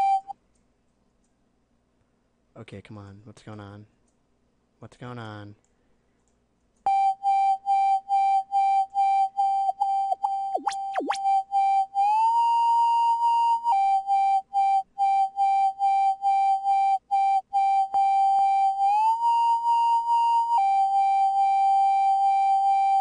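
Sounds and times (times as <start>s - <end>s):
pulsing synthesizer tone: 10.4s - 14.1s
fast synth pitch sweeps: 10.5s - 11.4s.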